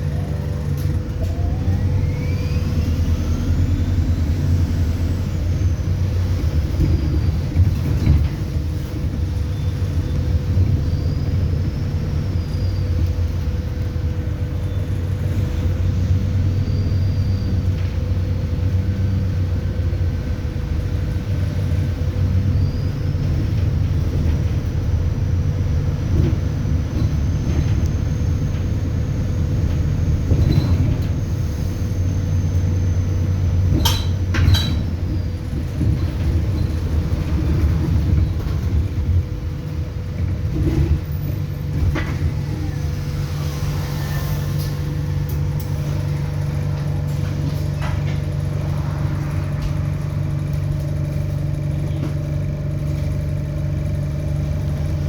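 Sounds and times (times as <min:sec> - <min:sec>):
bus interior rumble: 0:00.0 - 0:55.0
faint turbo whistle: 0:01.2 - 0:04.5.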